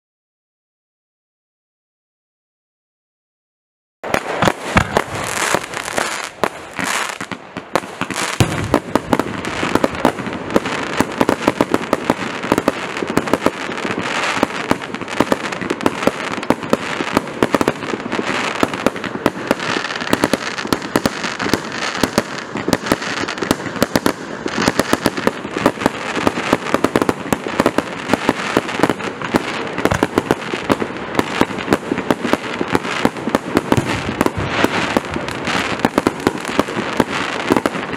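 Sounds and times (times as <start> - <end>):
firework barrage of sharp bangs: 4.0 - 37.9.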